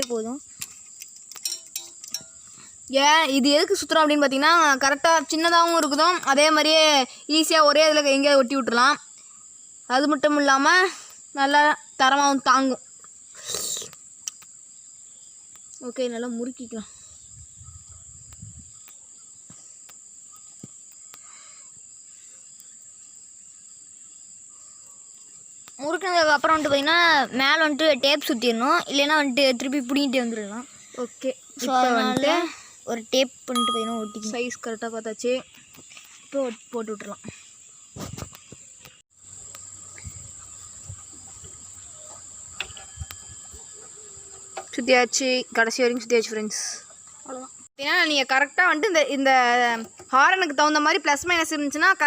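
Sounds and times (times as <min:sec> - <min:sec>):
wires clicking and tapping: 0:00.0 - 0:02.6
crickets trilling: 0:00.0 - 0:52.0
insects chirring: 0:00.0 - 0:52.0.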